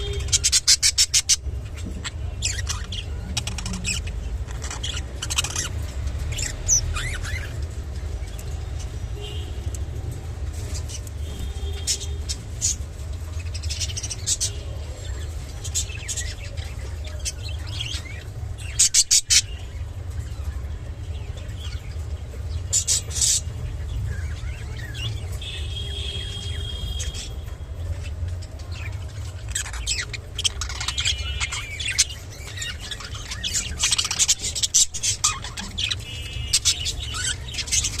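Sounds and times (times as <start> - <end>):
budgerigar chirping and chattering: 0.0 - 7.7, 11.7 - 20.4, 22.5 - 27.3, 27.9 - 38.0.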